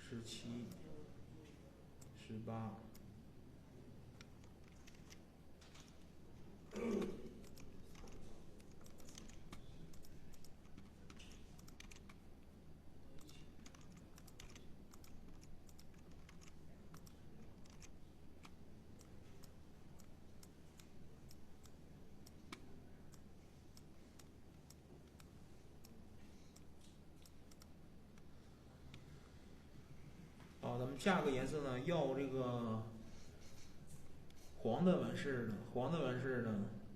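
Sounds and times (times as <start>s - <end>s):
computer keyboard typing: 4.2s - 6.1s, 7.3s - 12.3s, 13.1s - 27.8s.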